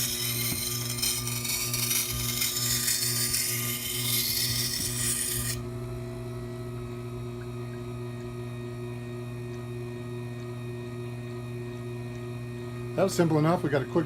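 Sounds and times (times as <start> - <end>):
knife grinding on stone wheel: 0.0 - 5.6
motor humming: 0.0 - 14.0.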